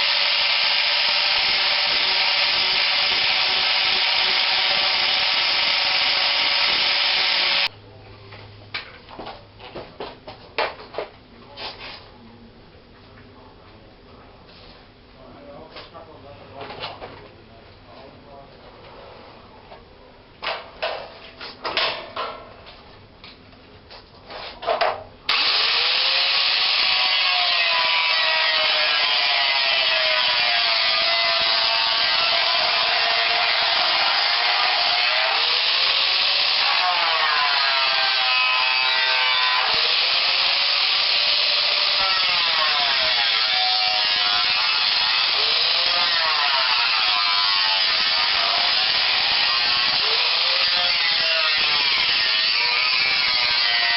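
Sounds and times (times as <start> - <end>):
power tool motor on bodywork: 0.0 - 7.7, 25.3 - 53.9.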